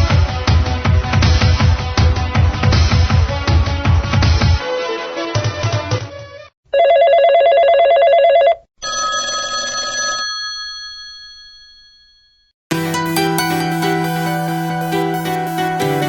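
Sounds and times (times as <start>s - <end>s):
electronic trilling phone ring: 6.8s - 12.2s
phone chime: 6.8s - 12.5s
electronic music ringtone: 12.7s - 16.0s.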